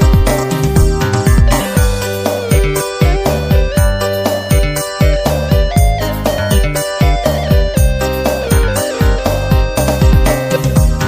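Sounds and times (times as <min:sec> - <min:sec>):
deep thumping pulse: 0:00.0 - 0:04.0
plucked guitar-like notes: 0:00.0 - 0:11.0.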